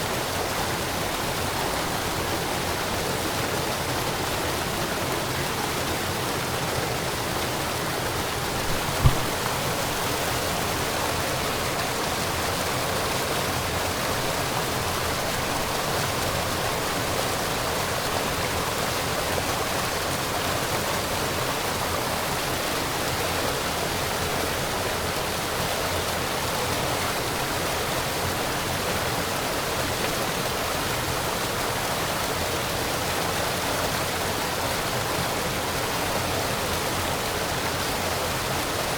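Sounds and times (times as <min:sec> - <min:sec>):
small waterfall rushing: 0:00.0 - 0:38.9
brief thump: 0:08.6 - 0:10.0.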